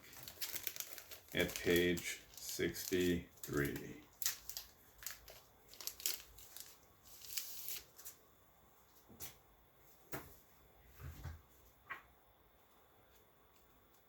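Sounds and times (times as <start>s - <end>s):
paper pages rustling: 0.0s - 8.2s.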